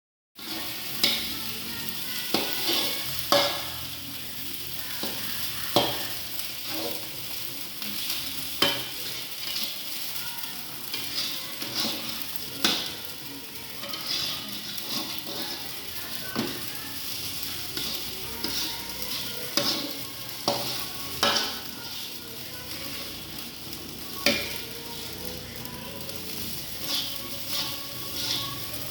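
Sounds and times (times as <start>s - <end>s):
rice sizzling in a pan: 0.4s - 28.9s
utensil scraping against pan: 2.2s - 3.8s, 7.8s - 10.2s, 10.8s - 23.6s, 26.0s - 28.9s.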